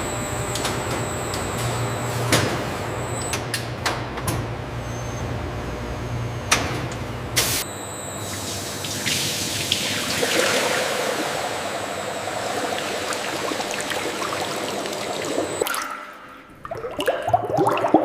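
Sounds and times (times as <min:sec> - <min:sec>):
low machine hum: 0:00.0 - 0:15.6.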